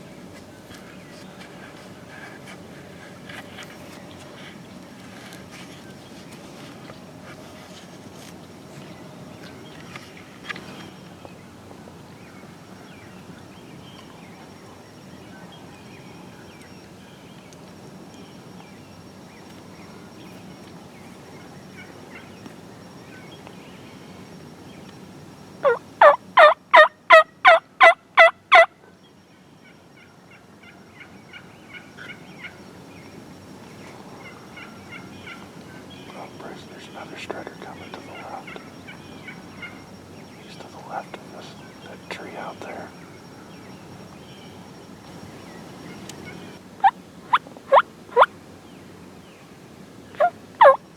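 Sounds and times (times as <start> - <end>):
turkey yelps: 25.6 - 28.7, 47.3 - 48.3, 50.2 - 50.8.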